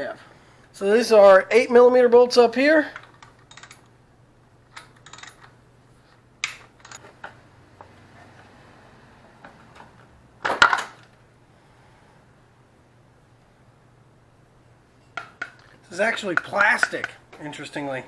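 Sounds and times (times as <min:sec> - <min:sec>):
hand tools clinking on metal: 0:15.9 - 0:17.2.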